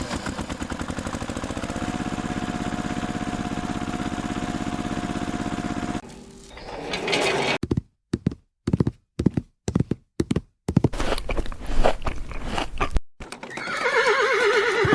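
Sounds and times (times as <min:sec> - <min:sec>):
crunching and scraping: 0:05.8 - 0:07.6, 0:10.9 - 0:13.4.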